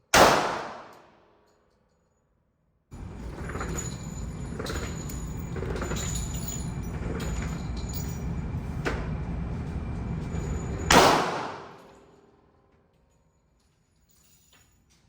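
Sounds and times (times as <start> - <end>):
low rumble: 3.0 - 11.9.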